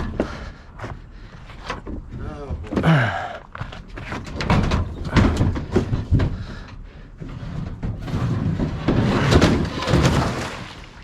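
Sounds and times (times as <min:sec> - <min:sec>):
knocks clicks and clatter: 0:03.7 - 0:10.7.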